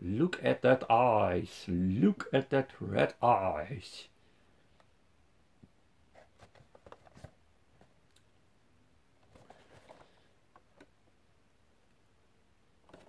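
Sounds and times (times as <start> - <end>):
faint clicks and rustling: 9.2 - 11.0.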